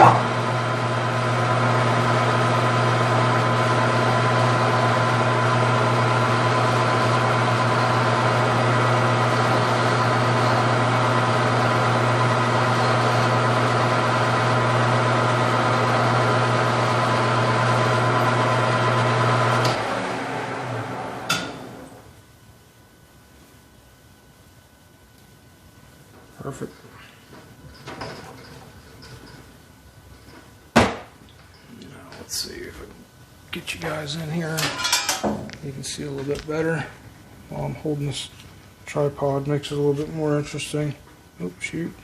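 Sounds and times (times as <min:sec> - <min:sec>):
metal lathe humming: 0:00.0 - 0:22.1.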